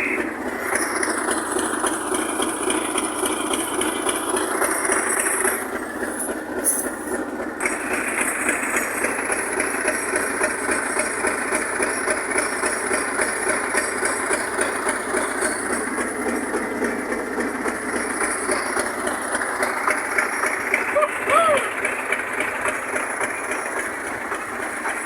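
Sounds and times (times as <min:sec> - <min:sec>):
engine idling: 0:00.0 - 0:25.0.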